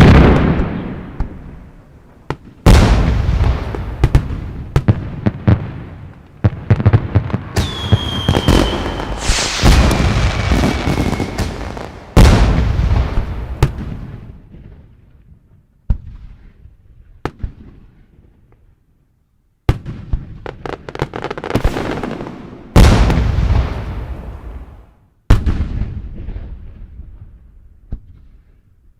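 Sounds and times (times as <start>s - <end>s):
firework bursts with crackling: 2.3s - 14.3s, 20.5s - 24.9s
whistling firework tones: 7.3s - 13.9s, 21.4s - 24.9s.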